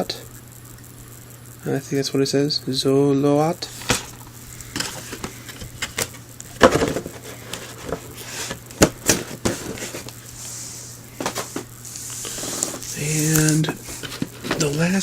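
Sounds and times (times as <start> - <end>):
boxes handled knocks and taps: 8.8 - 10.1.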